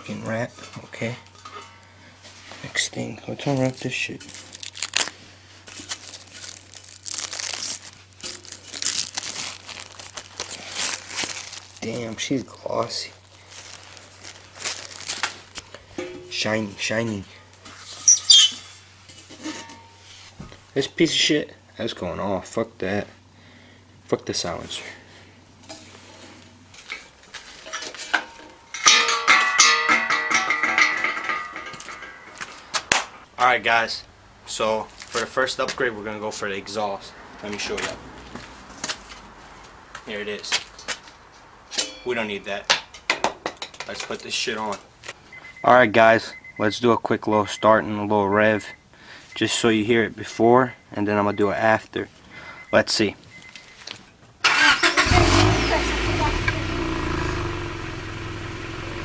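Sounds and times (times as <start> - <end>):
packing wrap tearing and crumpling: 4.3 - 12.0, 13.3 - 15.6
faint clinks and knocks: 26.8 - 32.7.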